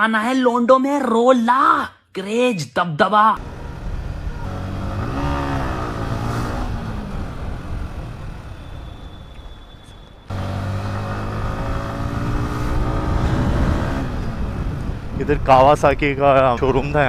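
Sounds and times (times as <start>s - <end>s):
motorcycle engine running: 3.4s - 9.2s, 10.3s - 15.2s
wind and road noise: 3.4s - 17.0s.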